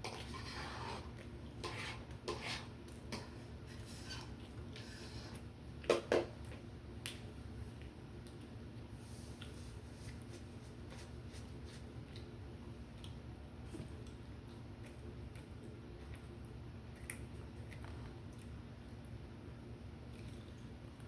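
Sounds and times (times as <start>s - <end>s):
cutlery scraping a plate: 0.0s - 5.4s.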